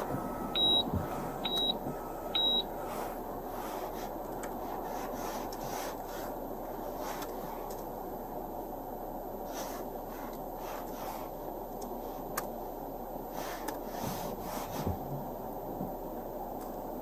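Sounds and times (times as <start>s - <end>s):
electronic two-tone beeping: 0.0s - 2.9s
steady low hum: 0.0s - 17.0s.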